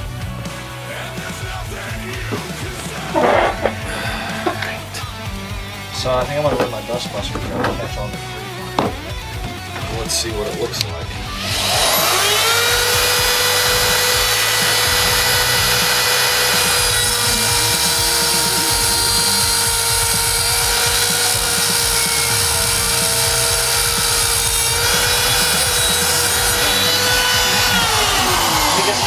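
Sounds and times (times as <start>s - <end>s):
electric motor whining: 2.0s - 5.8s, 11.2s - 29.0s.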